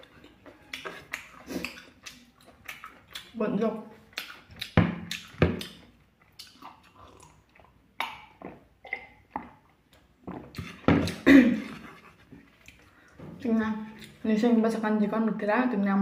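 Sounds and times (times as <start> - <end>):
person biting and chewing food: 0.0 - 3.4, 4.0 - 12.9.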